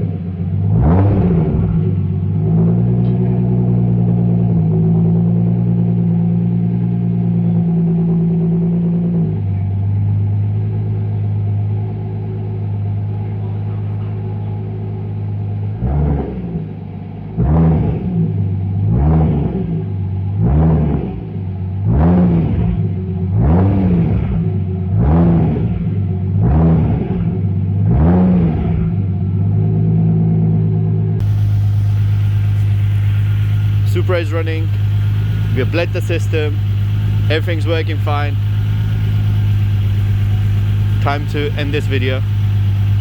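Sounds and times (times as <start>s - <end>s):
engine revving in short blips: 0.0s - 5.4s, 31.2s - 43.0s
car engine idling: 0.0s - 15.8s, 31.2s - 43.0s.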